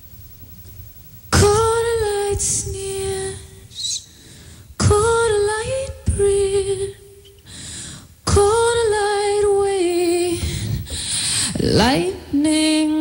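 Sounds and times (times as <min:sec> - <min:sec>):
woman singing unaccompanied: 0:01.3 - 0:04.0, 0:04.8 - 0:07.4, 0:08.3 - 0:13.0.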